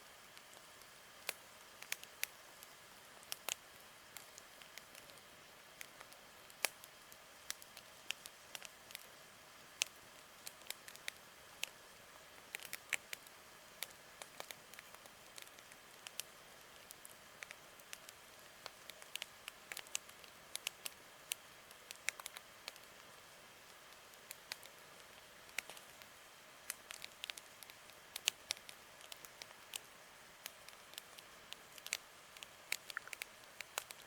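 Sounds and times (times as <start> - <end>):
soft steady hiss: 0.0 - 34.0
campfire crackling: 12.4 - 34.0.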